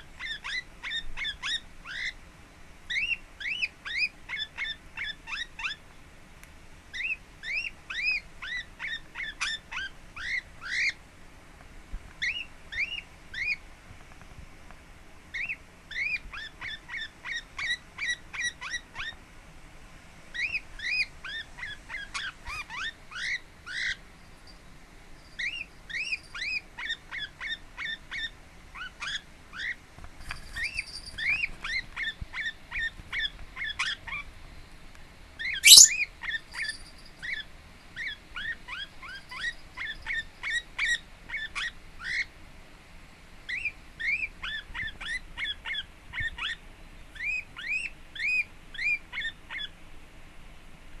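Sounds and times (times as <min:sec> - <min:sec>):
parakeet chirping: 0:00.1 - 0:02.2, 0:02.9 - 0:05.8, 0:06.9 - 0:11.0, 0:12.2 - 0:13.6, 0:15.3 - 0:19.2, 0:20.3 - 0:24.0, 0:25.2 - 0:34.3, 0:35.4 - 0:42.3, 0:43.5 - 0:49.7.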